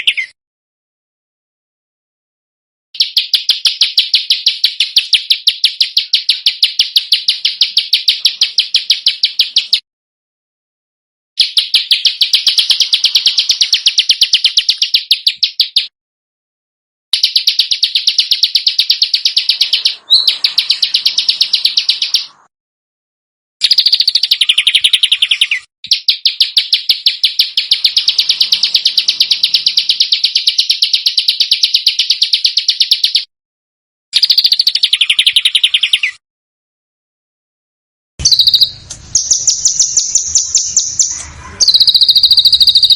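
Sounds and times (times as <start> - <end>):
songbird harsh rapid notes: 3.0 - 9.8, 11.4 - 15.9, 17.2 - 22.5, 23.6 - 33.2, 38.2 - 42.9.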